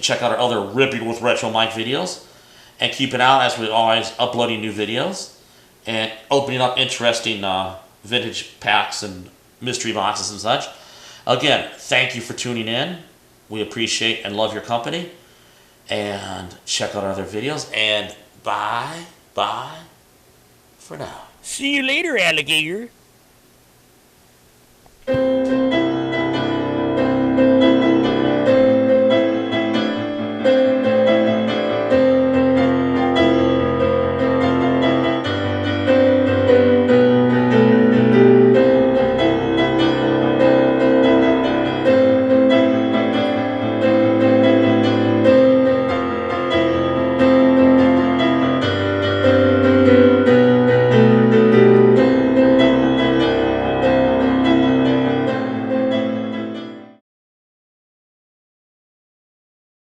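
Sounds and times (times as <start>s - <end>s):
keyboard chords over bass: 49.2s - 56.5s.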